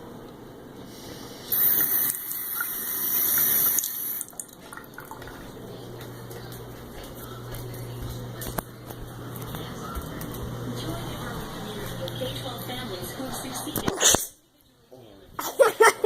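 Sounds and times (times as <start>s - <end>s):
water running from sink tap: 1.5s - 5.4s.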